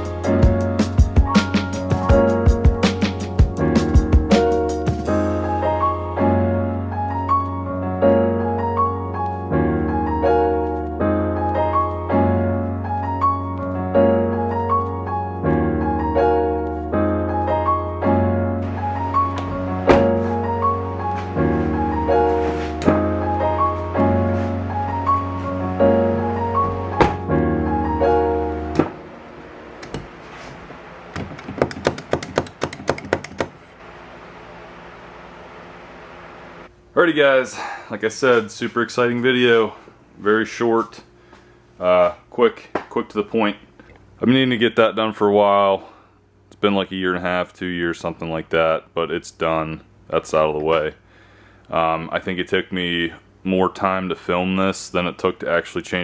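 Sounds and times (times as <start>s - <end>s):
electric piano instrumental: 0.0s - 29.8s.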